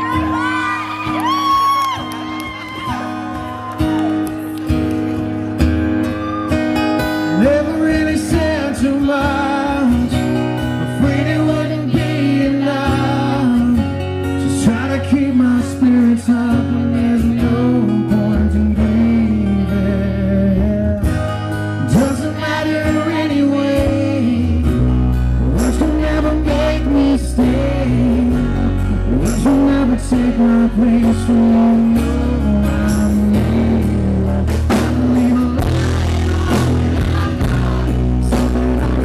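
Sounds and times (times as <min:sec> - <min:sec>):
strummed acoustic guitar: 0:02.1 - 0:39.0
bending wavering lead guitar notes: 0:16.5 - 0:39.0.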